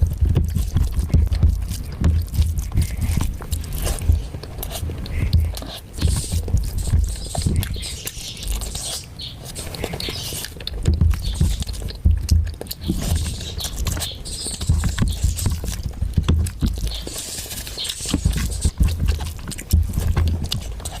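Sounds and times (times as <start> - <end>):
low thuds: 0.0 - 7.8, 10.8 - 13.9
person chewing food: 0.0 - 21.0
wet mouth clicks and smacks: 0.0 - 21.0.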